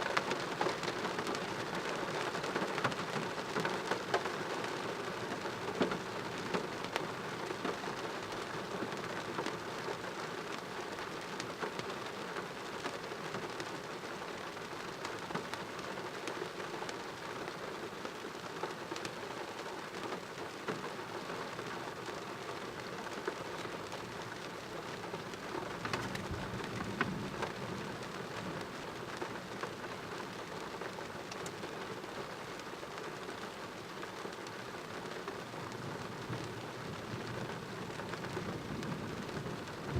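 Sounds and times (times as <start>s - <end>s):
heavy rain falling: 0.0s - 39.9s
low rumble of thunder: 36.4s - 39.9s.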